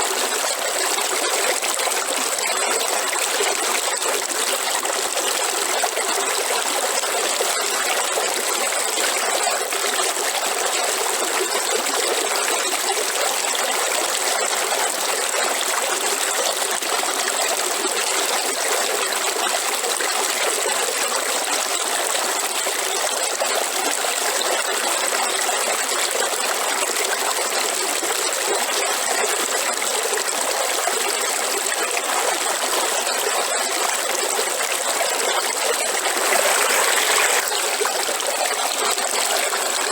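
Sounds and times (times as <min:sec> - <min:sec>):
river water flowing: 0:30.0 - 0:39.9.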